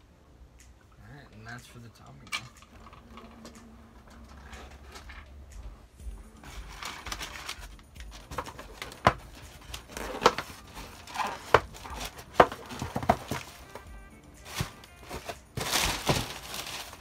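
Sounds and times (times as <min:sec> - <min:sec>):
hard objects clicking and knocking: 0:02.1 - 0:05.8, 0:06.7 - 0:13.9.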